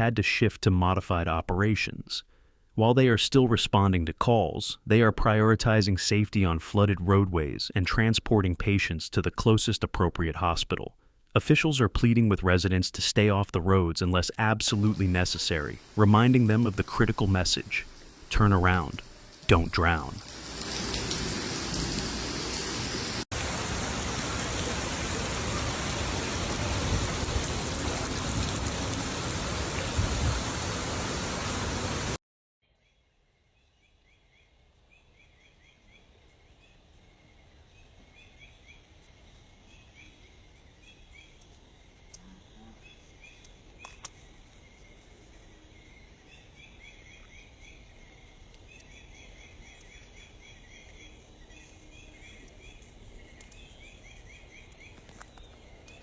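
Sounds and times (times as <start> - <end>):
heavy rain pouring: 14.8 - 32.2.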